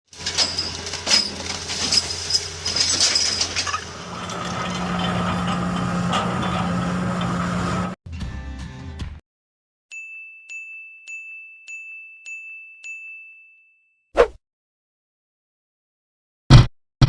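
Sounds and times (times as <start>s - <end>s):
metallic clinks and clanks: 0.1s - 6.6s
heavy machinery engine drone: 0.1s - 8.0s.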